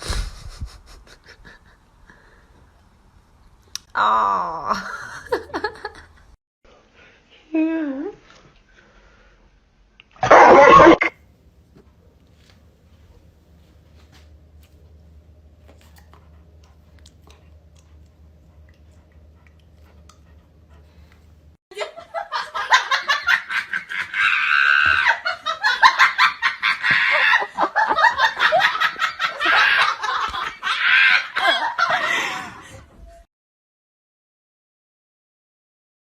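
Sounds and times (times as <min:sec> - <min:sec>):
hearty laughter: 0:00.1 - 0:02.4, 0:04.8 - 0:06.3, 0:21.7 - 0:33.0
low steady hum: 0:11.0 - 0:23.6.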